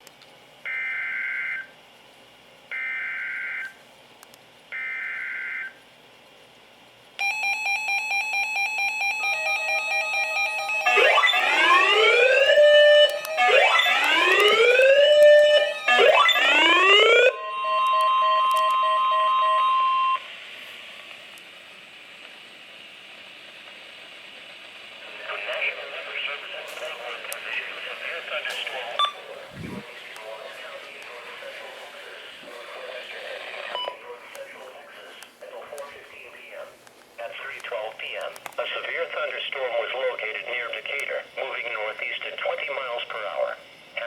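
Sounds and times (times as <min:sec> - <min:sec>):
steady alarm tone: 0:07.2 - 0:20.4, 0:29.0 - 0:29.8
rising siren-like sweeps: 0:10.2 - 0:20.2, 0:29.5 - 0:29.8
radio hiss: 0:21.8 - 0:44.0.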